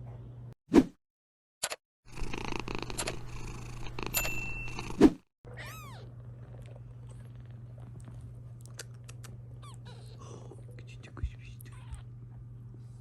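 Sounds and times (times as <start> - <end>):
kitten mewing: 5.5 - 6.1, 11.6 - 12.1
faint low hum: 5.5 - 13.0.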